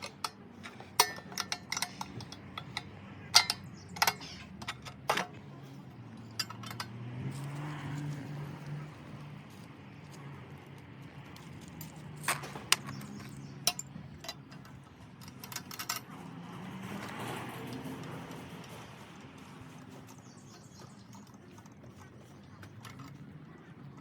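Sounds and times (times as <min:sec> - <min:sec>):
metal parts clinking: 0:00.0 - 0:08.2, 0:11.4 - 0:17.2.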